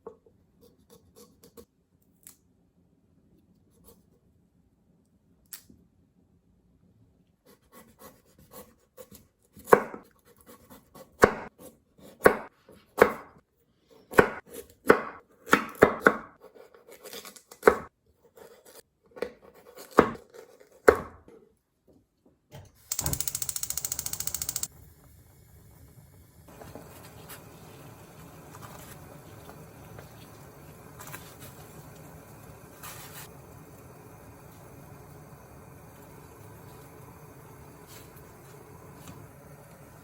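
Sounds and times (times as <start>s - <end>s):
knife chopping on cutting board: 9.6s - 10.1s, 11.0s - 13.4s, 14.1s - 16.4s
rapid clicking buzz: 22.9s - 24.7s.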